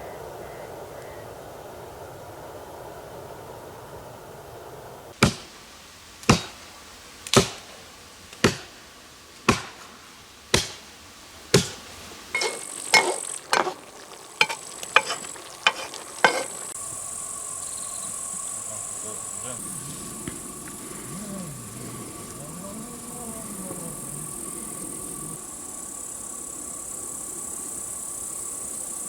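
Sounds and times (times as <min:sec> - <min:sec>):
axe chopping wood: 0:05.2 - 0:05.5, 0:06.2 - 0:06.6, 0:07.3 - 0:07.7, 0:08.4 - 0:08.7, 0:09.5 - 0:09.9, 0:10.5 - 0:10.8, 0:11.5 - 0:11.8.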